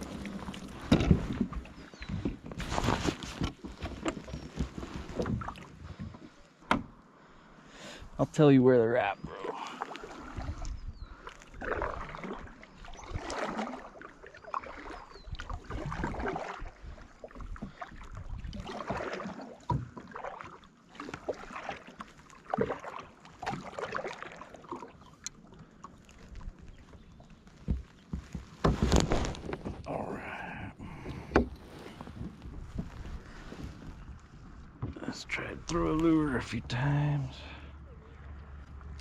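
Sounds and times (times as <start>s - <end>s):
paddle splashing through water: 0.0s - 6.6s, 9.0s - 30.1s, 30.8s - 36.5s.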